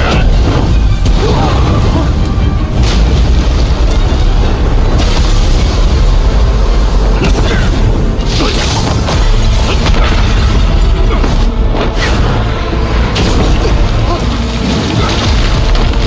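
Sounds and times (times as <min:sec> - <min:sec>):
booming blasts: 0:00.0 - 0:16.0
dramatic music score: 0:00.0 - 0:16.0.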